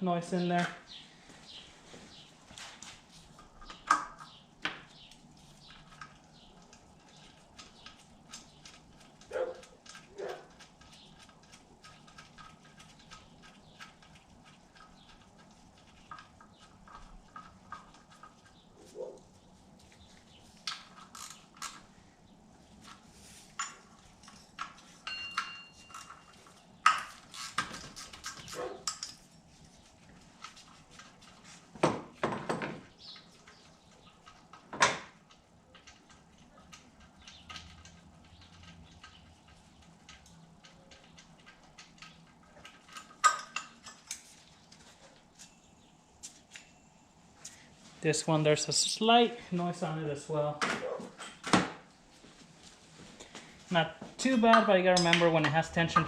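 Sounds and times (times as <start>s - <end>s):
metal tools clinking: 22.8s - 29.5s, 35.2s - 45.6s, 54.2s - 56.0s
short ringing pings: 25.1s - 25.9s.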